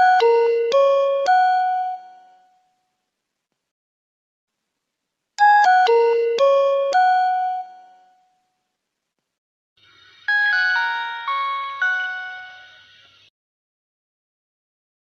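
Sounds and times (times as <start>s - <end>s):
phone chiming melody: 0.0s - 2.6s, 5.4s - 8.3s, 10.3s - 12.9s.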